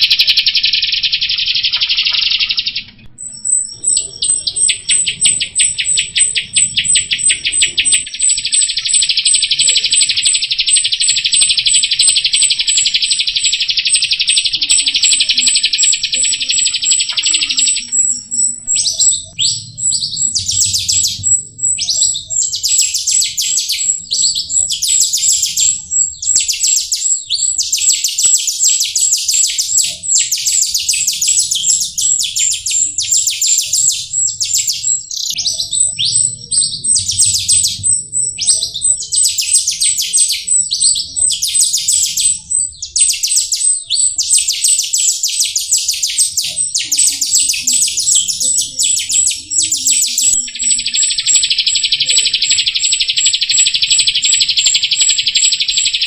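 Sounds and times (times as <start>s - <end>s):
starling chattering song: 0.0s - 56.0s
thin steady high tone: 0.0s - 56.0s.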